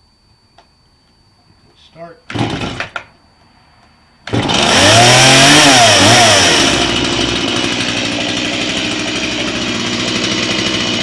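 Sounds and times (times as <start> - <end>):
chainsaw engine revving and idling: 2.3 - 2.9, 4.3 - 11.0.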